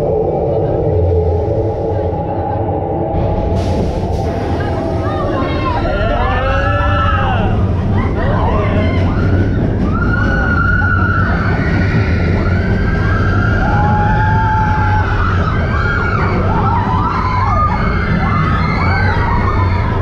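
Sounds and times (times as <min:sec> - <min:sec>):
roller coaster train rumbling: 0:00.0 - 0:20.0
riders screaming: 0:05.8 - 0:20.0.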